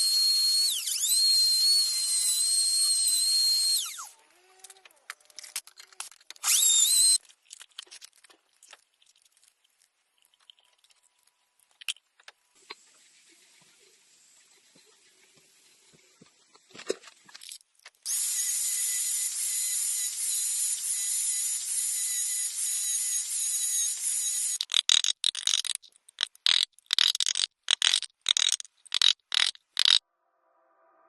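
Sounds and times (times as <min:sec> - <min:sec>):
power tool whining on wood: 0:00.0 - 0:05.0, 0:06.4 - 0:07.2, 0:18.1 - 0:24.6.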